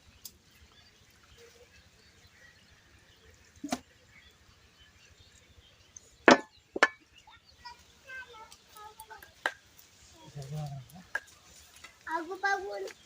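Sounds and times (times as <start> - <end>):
sharp knocks: 6.3 - 7.0.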